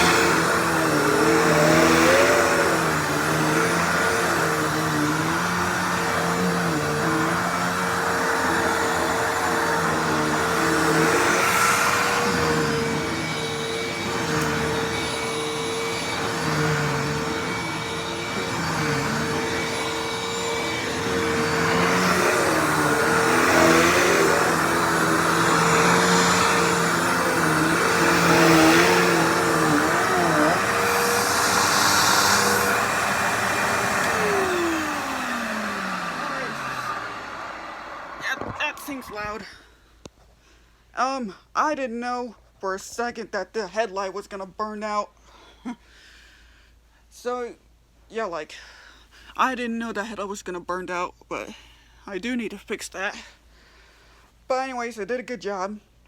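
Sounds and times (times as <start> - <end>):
vacuum cleaner running: 0.0 - 39.6.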